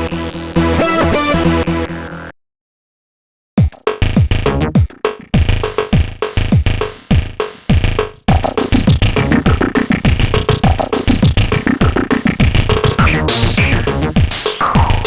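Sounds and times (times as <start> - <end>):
drum machine kicks: 3.6 - 15.0
synthesizer chords: 9.0 - 10.4, 11.0 - 15.0
electronic ringtone music: 13.0 - 15.0.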